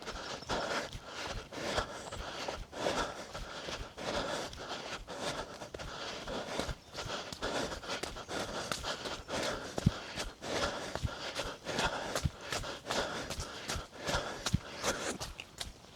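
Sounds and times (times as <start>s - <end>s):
runner breathing: 0.0s - 15.9s
footfalls on muddy trail: 6.6s - 15.9s.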